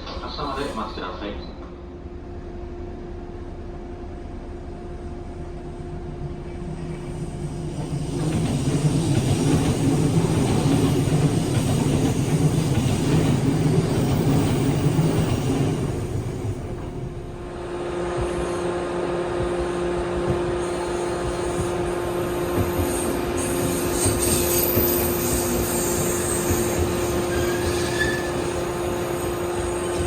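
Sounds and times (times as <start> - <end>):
train equipment hum: 0.0 - 30.0
train wheels rumbling on rails: 6.2 - 30.0.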